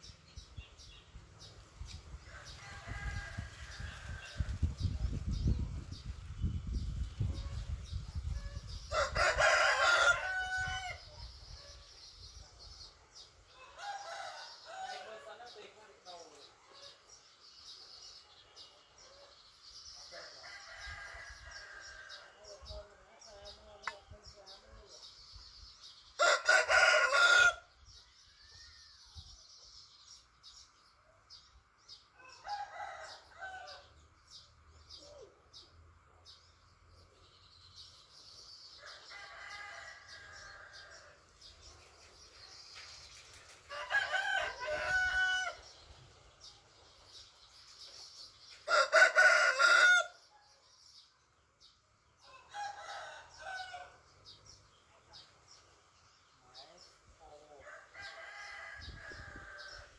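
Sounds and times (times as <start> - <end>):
small birds chirping: 0.0 - 10.2, 10.8 - 26.2, 26.9 - 59.9
roosters crowing: 2.2 - 4.6, 8.4 - 11.1, 13.5 - 15.3, 20.2 - 22.6, 26.2 - 27.8, 32.2 - 34.0, 38.8 - 41.3, 43.6 - 45.8, 48.6 - 50.3, 52.2 - 54.2, 57.6 - 59.9.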